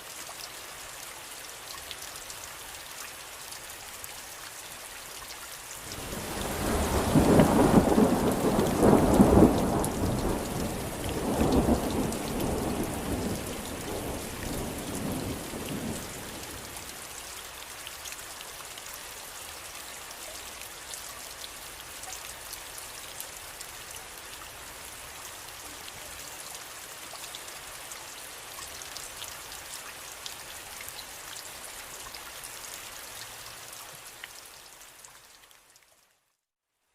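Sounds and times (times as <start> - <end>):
steady rain falling: 0.0 - 36.4
rolling thunder: 6.1 - 16.2.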